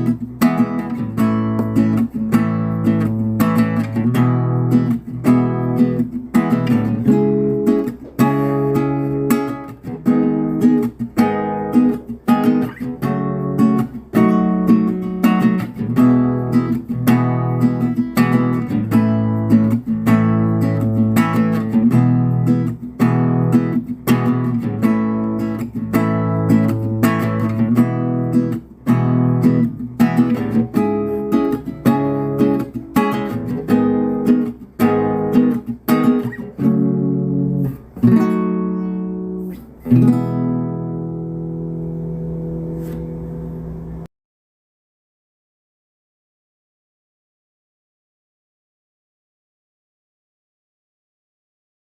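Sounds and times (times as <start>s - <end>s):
acoustic guitar strumming: 0.0s - 44.1s.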